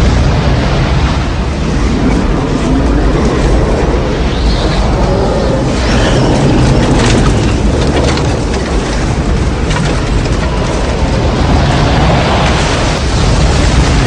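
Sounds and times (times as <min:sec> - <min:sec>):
crackles: 0:00.0 - 0:14.0
storm wind rumble: 0:00.0 - 0:14.0.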